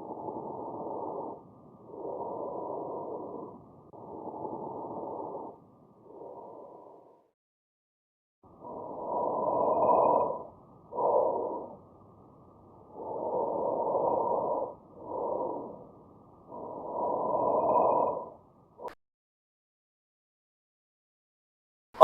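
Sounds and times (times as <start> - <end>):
breath sounds through stethoscope: 0.0 - 7.4, 8.6 - 11.8, 12.9 - 18.9.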